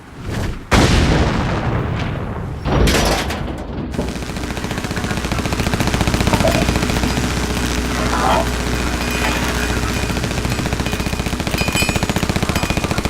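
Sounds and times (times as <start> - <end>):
automatic gunfire: 3.9 - 13.0.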